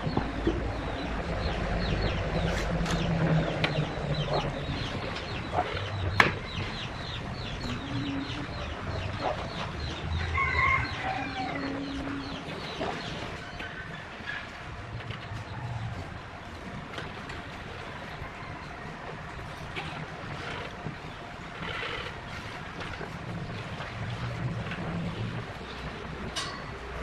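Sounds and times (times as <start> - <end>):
chickens clucking: 0.0 - 24.0
sharp knocks: 6.1 - 6.6.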